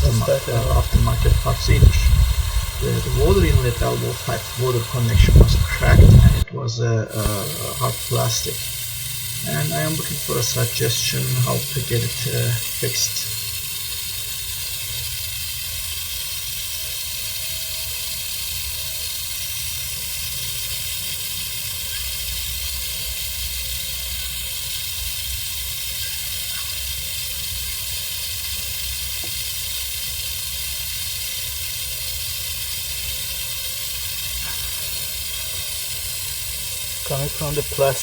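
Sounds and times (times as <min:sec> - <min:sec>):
low rumble: 0:00.0 - 0:06.5
water spraying hiss: 0:00.0 - 0:06.5, 0:07.1 - 0:38.0.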